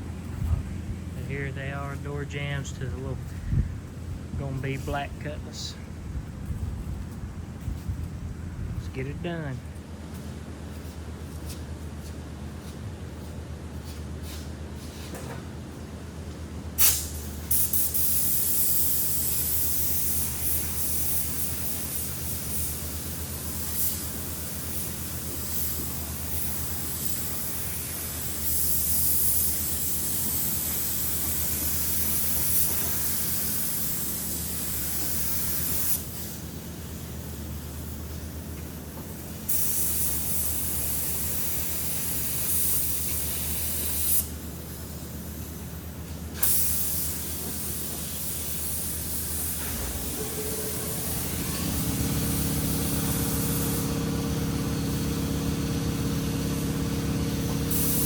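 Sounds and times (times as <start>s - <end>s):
machine hum: 0.0s - 11.0s, 49.2s - 58.0s
paint spray gun hissing: 16.8s - 58.0s.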